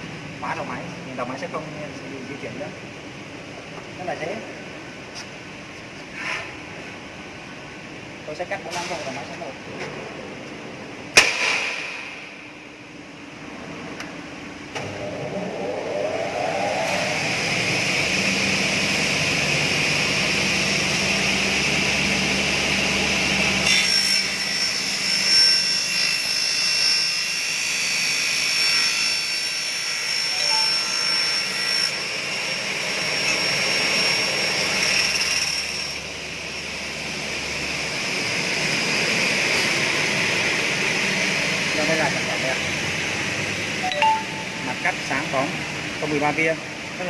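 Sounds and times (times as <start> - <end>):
circular saw running: 14.8 - 36.4
saw cutting metal with ringing whine: 14.8 - 38.1.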